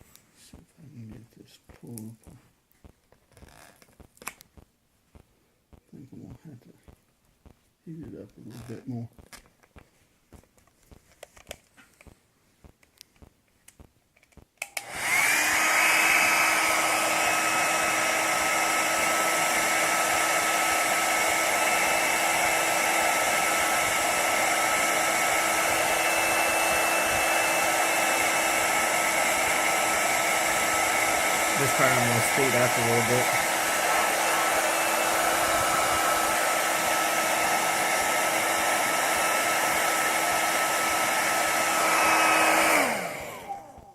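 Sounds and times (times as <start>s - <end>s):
hair dryer running: 14.6s - 43.9s.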